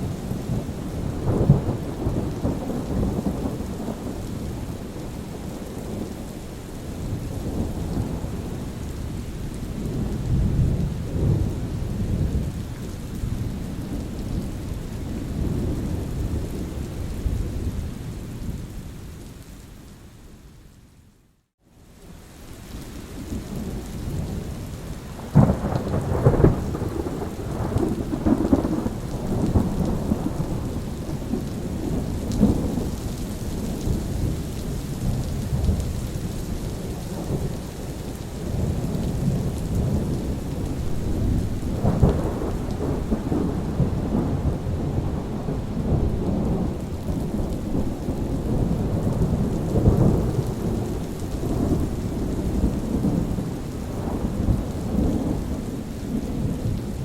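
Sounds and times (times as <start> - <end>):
steady rain: 0.0 - 57.0
thunder rumbling: 23.6 - 57.0.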